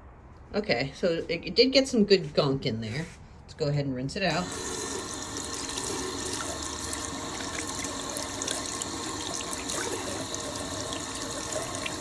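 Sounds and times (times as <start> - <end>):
water running: 4.3 - 12.0
small splashes: 4.6 - 12.0.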